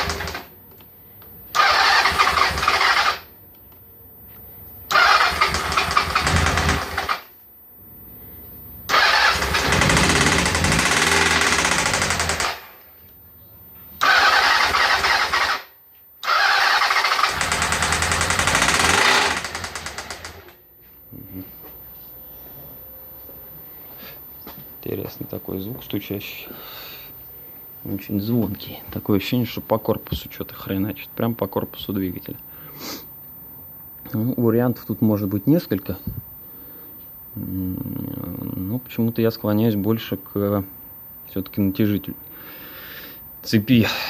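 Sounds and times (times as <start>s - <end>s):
motorcycle engine revving: 5.0s - 7.1s, 8.9s - 12.6s, 16.4s - 20.5s.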